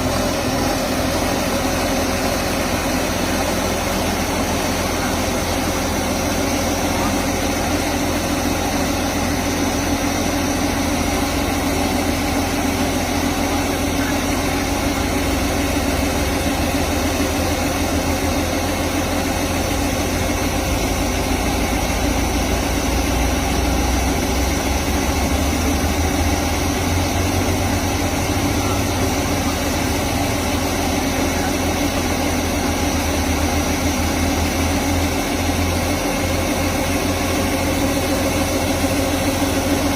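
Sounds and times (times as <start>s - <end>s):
combine harvester engine drone: 0.0s - 39.9s.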